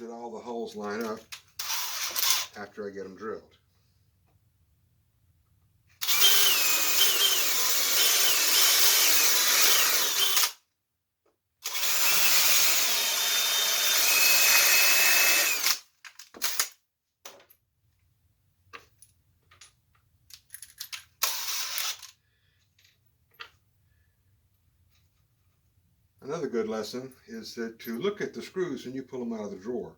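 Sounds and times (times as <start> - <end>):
power drill whining: 1.6 - 2.5, 6.0 - 10.6, 11.6 - 16.7, 21.2 - 22.1.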